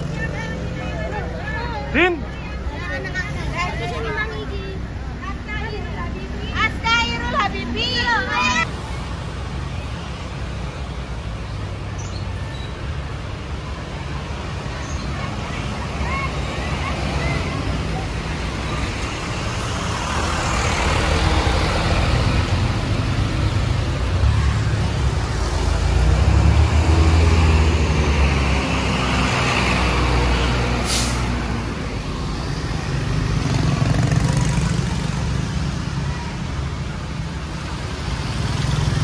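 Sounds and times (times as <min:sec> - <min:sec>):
bus engine droning: 0:12.4 - 0:39.0
air brake hiss: 0:30.8 - 0:31.3.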